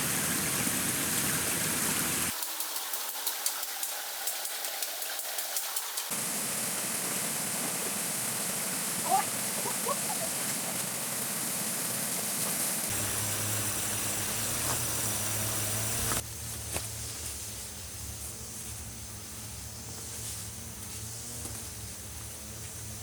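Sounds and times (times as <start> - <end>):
stream water rushing: 0.0 - 2.4, 6.0 - 16.2.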